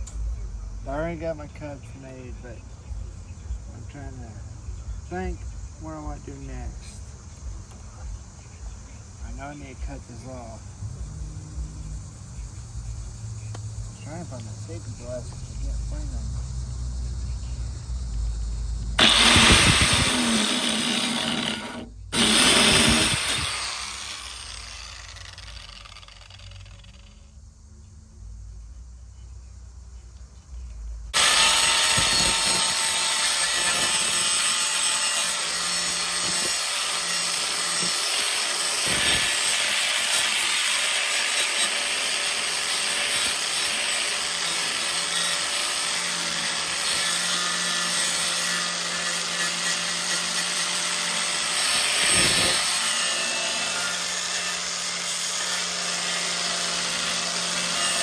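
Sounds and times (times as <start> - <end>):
power tool cutting sheet metal: 19.0 - 27.1, 31.2 - 58.0.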